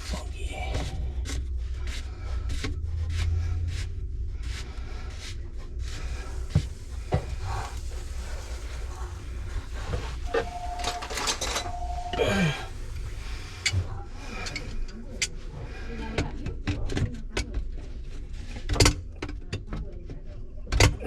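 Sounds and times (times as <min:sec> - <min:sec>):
low steady hum: 0:06.0 - 0:14.0
short squeaks: 0:06.1 - 0:13.8.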